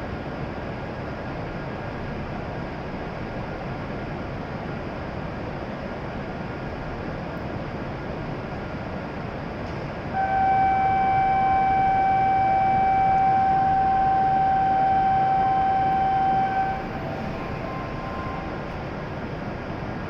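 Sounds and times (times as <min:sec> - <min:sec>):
station hum: 0:10.1 - 0:20.0
electronic signal tone: 0:10.2 - 0:19.0.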